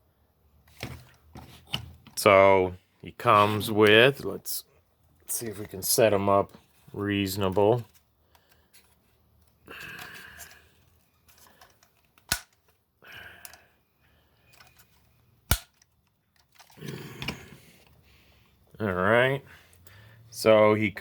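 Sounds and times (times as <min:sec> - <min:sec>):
sharp plastic clicks: 0:11.7 - 0:12.7, 0:15.5 - 0:16.7.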